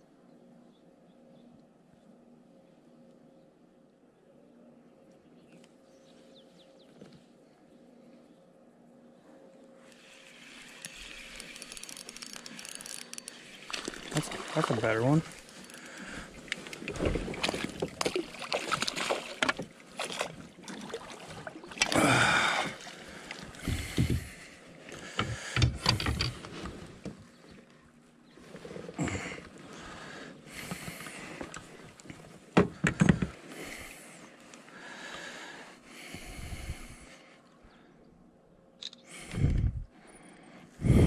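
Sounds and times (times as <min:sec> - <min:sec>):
water splashing: 0:13.6 - 0:23.7.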